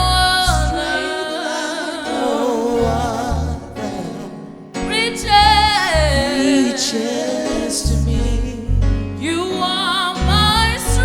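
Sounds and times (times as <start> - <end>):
bass and accompaniment: 0.0 - 0.8, 2.8 - 4.0, 4.8 - 6.3, 7.8 - 9.5, 10.2 - 11.0
gospel singing voice: 0.0 - 11.0.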